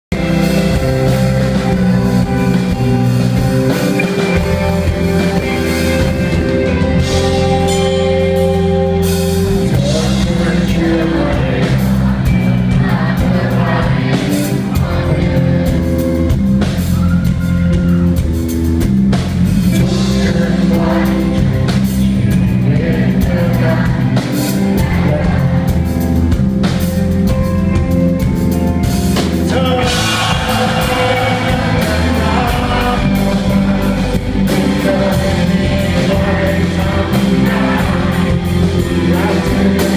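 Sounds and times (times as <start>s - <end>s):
drum kit: 0.0s - 39.9s
rock band playing live: 0.1s - 39.9s
person singing: 0.2s - 16.0s, 29.5s - 39.9s.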